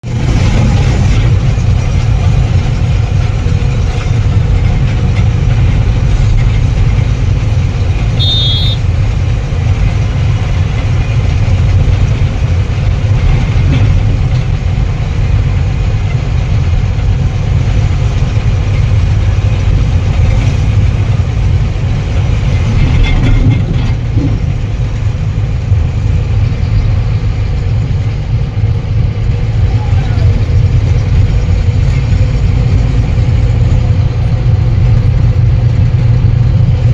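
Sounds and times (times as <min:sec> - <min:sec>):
truck engine running: 0:00.0 - 0:36.9
brief high-pitched tone: 0:08.2 - 0:08.8.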